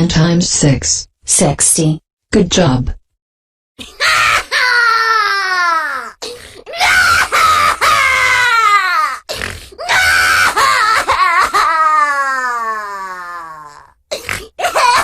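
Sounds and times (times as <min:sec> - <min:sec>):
cartoon baby crying: 0:03.8 - 0:13.9.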